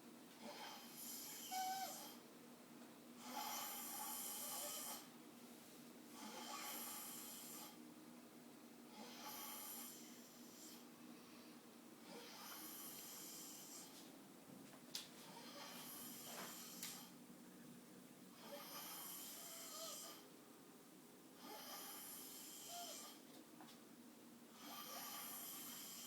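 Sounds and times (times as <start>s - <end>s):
man snoring: 3.2s - 5.1s, 6.2s - 7.8s, 18.4s - 20.2s, 24.6s - 26.0s.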